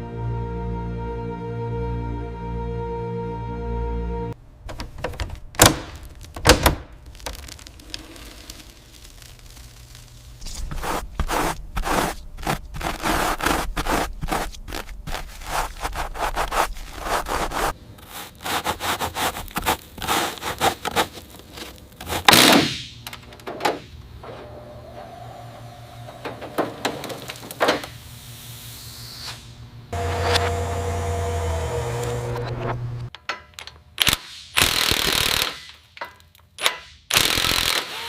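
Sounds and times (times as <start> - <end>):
scraping and rubbing strokes: 7.2 - 22.3.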